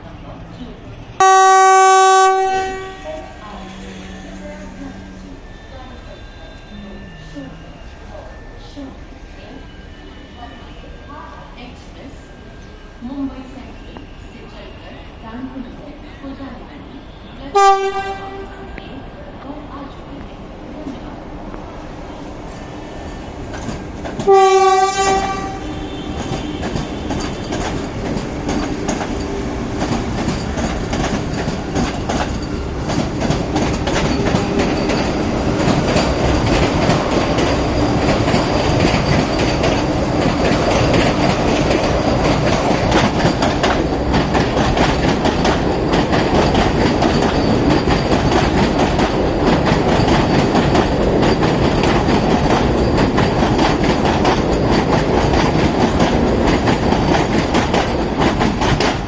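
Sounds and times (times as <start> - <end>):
train wheels clattering over rail joints: 23.4 - 59.0.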